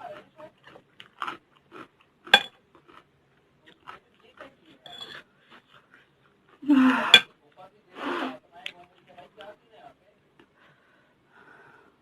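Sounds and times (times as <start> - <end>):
chewing and crunching snack: 0.0 - 6.6
cutlery clinking against dish: 2.3 - 2.6, 4.8 - 5.2.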